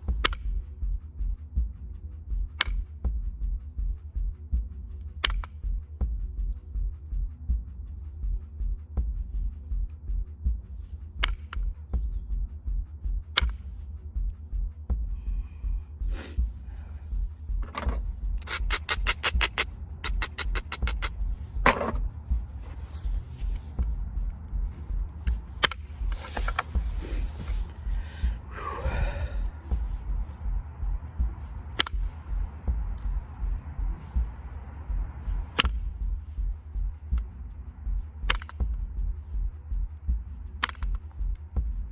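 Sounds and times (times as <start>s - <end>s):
stone knapping clicks: 2.6s - 2.9s, 5.1s - 5.6s, 11.2s - 11.8s, 13.3s - 13.7s, 17.6s - 22.0s, 25.3s - 27.8s, 31.8s - 32.0s, 35.5s - 35.9s, 38.3s - 38.6s, 40.6s - 41.1s.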